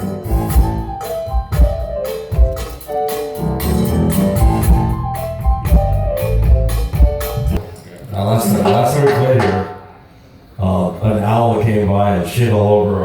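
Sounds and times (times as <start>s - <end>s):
drum kit beat: 0.0s - 7.6s, 8.6s - 10.1s
keyboard chords and melody: 0.0s - 7.6s.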